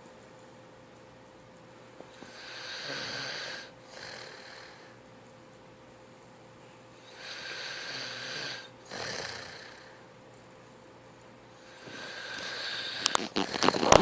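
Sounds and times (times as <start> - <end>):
person snoring: 2.2 - 5.0, 7.0 - 10.0, 11.6 - 14.0.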